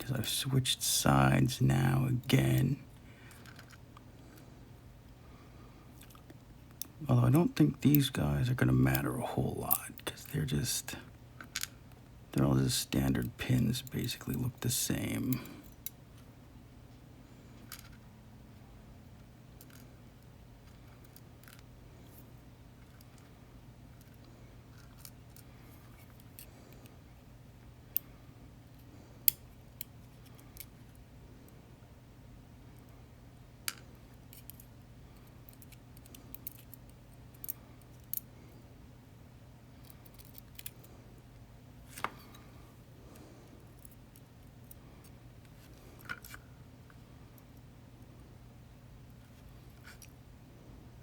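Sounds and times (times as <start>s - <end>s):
low steady hum: 0.0s - 51.0s
metallic clicks of lock parts: 33.7s - 38.3s.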